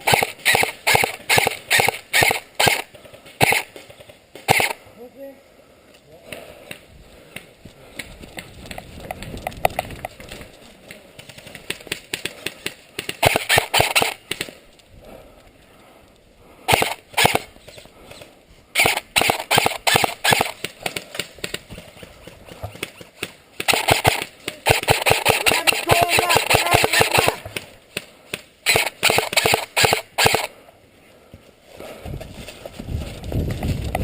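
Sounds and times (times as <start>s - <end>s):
airsoft guns firing bursts: 0.0s - 4.8s, 11.7s - 14.5s, 16.7s - 17.8s, 18.8s - 30.5s.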